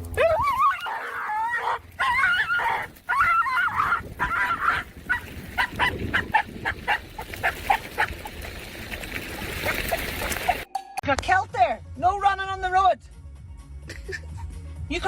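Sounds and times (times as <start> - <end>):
animal calling: 0.2 - 8.4.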